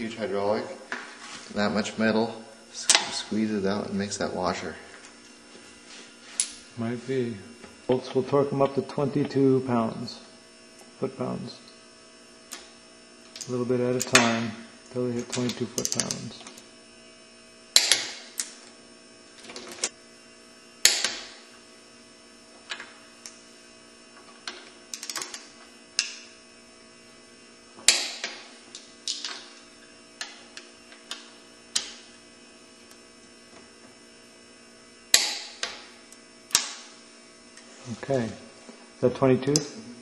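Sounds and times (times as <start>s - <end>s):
steady electrical hum: 0.0s - 40.0s
torque wrench clicks and ratchet ticks: 24.9s - 25.4s.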